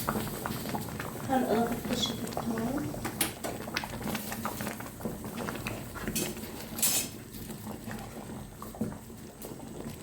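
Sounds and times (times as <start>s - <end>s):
utensil scraping cooking pot: 5.4s - 7.4s.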